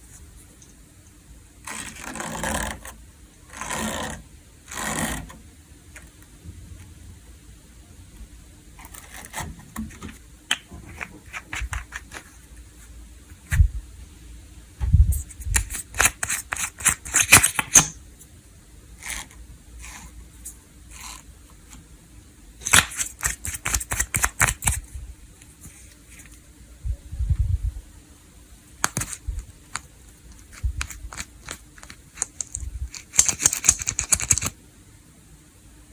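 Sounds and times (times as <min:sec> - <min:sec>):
crunchy slime crackling and popping: 0:22.6 - 0:24.8.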